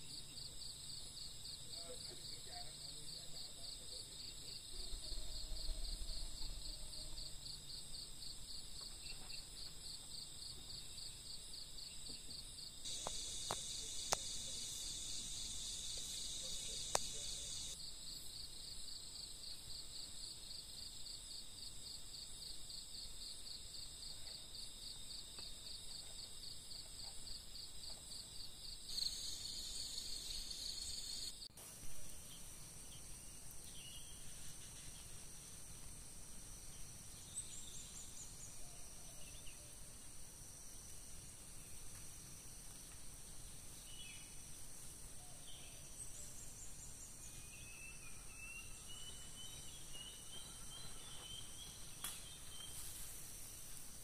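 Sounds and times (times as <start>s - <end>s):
high insect hum: 0.0s - 54.0s
insects trilling: 0.0s - 54.0s
faint clicks: 12.9s - 14.6s, 16.5s - 17.7s.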